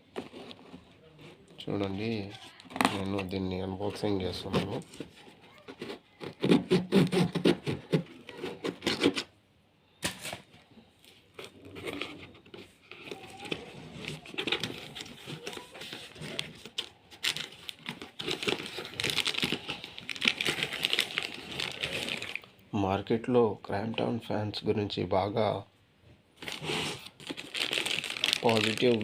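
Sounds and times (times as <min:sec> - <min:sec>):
wrapping rustling and crinkling: 0:10.2 - 0:22.5, 0:26.4 - 0:29.0
packaging tearing: 0:11.4 - 0:22.5, 0:26.4 - 0:29.0.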